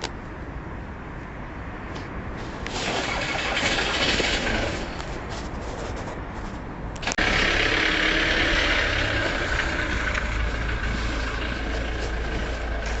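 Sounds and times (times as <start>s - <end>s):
diesel engine idling: 2.3s - 5.5s, 6.9s - 13.0s.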